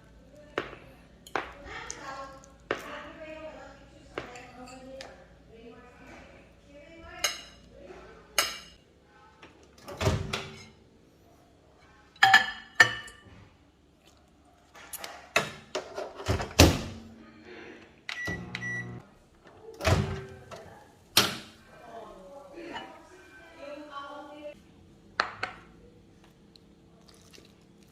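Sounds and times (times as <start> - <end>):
short beeps: 18.2 - 19.0.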